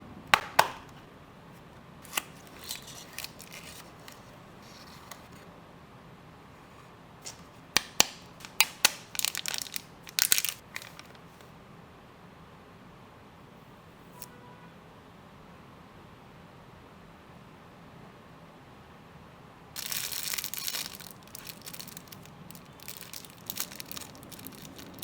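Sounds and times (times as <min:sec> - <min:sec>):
packaging clicks and snaps: 0:00.3 - 0:01.0, 0:02.1 - 0:05.4, 0:07.2 - 0:11.5, 0:19.8 - 0:25.0
packaging crinkling and tearing: 0:02.0 - 0:05.4, 0:07.2 - 0:11.5, 0:19.8 - 0:25.0.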